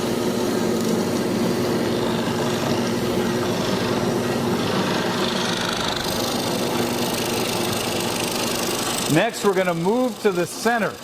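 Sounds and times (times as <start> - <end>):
mortiser motor humming: 0.0 - 11.0
bit boring into wood: 2.1 - 10.9.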